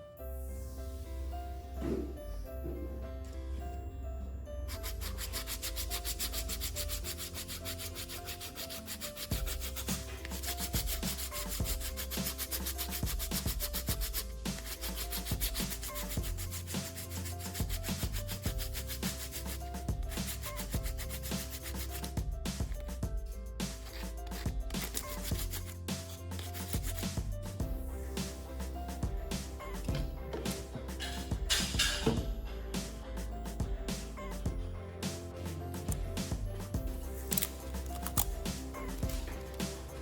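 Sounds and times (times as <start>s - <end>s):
sandpaper rubbing on plastic: 4.8s - 27.6s, 37.1s - 40.0s.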